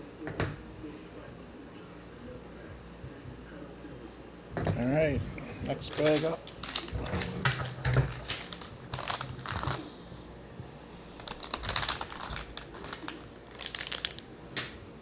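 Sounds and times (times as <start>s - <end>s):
plastic bag crinkling: 5.4s - 10.2s, 10.8s - 14.7s.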